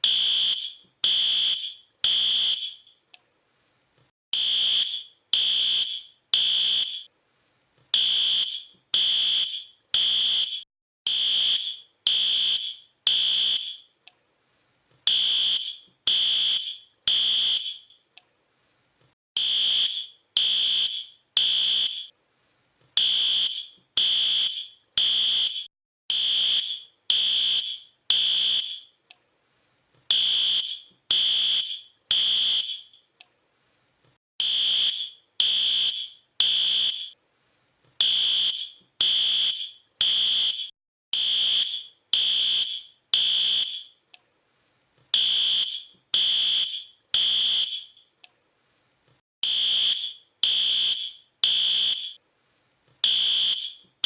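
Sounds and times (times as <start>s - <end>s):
fire alarm high-pitched beeps: 0.0s - 3.0s, 4.4s - 7.1s, 8.0s - 13.9s, 15.1s - 18.0s, 19.4s - 22.1s, 23.0s - 29.0s, 30.1s - 33.0s, 34.4s - 37.2s, 38.0s - 44.0s, 45.2s - 48.0s, 49.4s - 52.2s, 53.0s - 53.9s.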